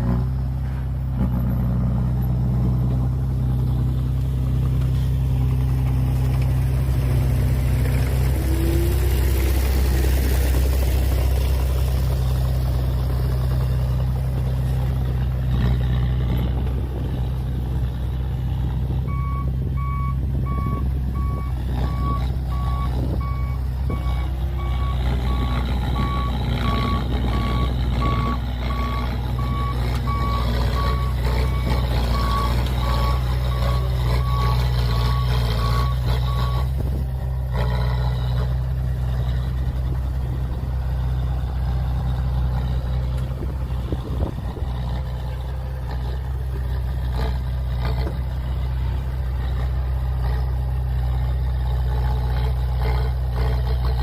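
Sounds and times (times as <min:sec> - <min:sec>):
heavy diesel machinery droning: 0:00.0 - 0:54.0
reversing alarm beeping: 0:19.1 - 0:36.7.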